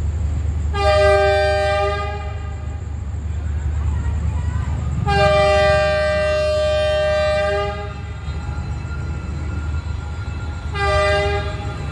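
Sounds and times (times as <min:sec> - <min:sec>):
train rumbling: 0:00.0 - 0:11.9
locomotive horn blast: 0:00.7 - 0:02.7, 0:05.0 - 0:08.4, 0:10.6 - 0:11.9.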